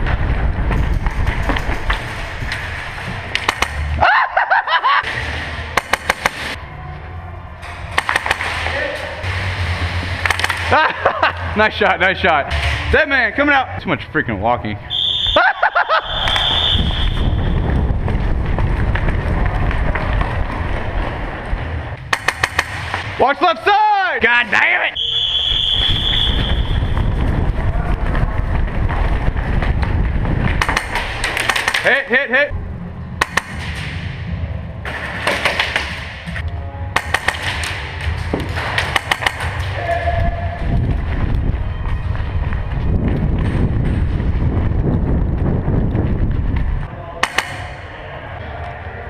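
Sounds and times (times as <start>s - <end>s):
wind noise on microphone: 0.0s - 3.3s, 15.9s - 22.0s, 25.3s - 31.2s, 39.9s - 47.1s
rumbling of movement: 0.0s - 5.8s, 15.9s - 22.1s, 25.6s - 31.7s, 32.5s - 49.0s
airsoft gunfire: 5.8s - 6.6s, 8.0s - 8.7s, 22.1s - 23.0s, 37.0s - 37.8s, 38.8s - 39.6s.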